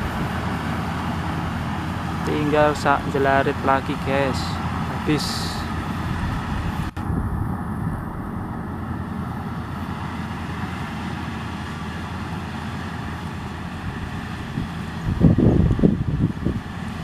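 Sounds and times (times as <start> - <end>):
combine harvester running: 0.0 - 17.0.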